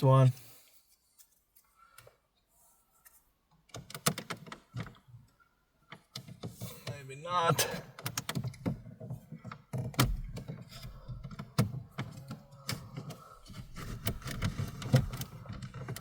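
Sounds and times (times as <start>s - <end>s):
plastic tool prying at dashboard trim: 8.0s - 16.0s.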